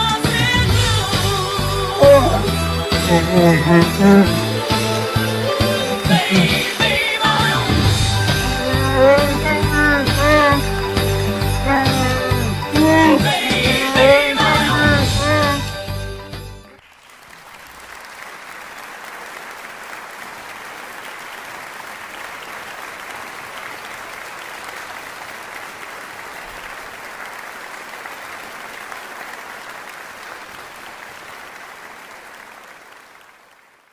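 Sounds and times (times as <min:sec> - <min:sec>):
audience applauding: 0:02.1 - 0:11.6, 0:16.8 - 0:33.9.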